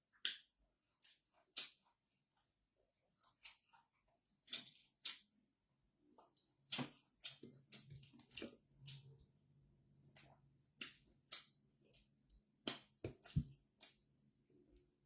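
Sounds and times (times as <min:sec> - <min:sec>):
chewing mouth clicks and smacks: 0:03.2 - 0:03.8, 0:04.4 - 0:05.2, 0:06.2 - 0:09.2, 0:10.1 - 0:14.0.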